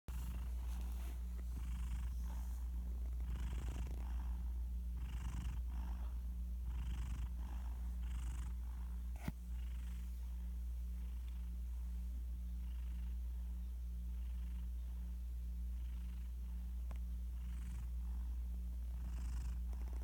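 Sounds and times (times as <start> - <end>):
cat snoring lightly: 0.1 - 10.4, 17.4 - 20.0.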